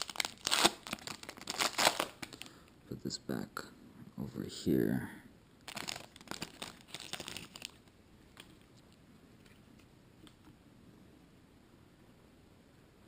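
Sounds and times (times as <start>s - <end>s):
card pack wrapper crinkling: 0.0s - 2.5s, 5.6s - 8.8s.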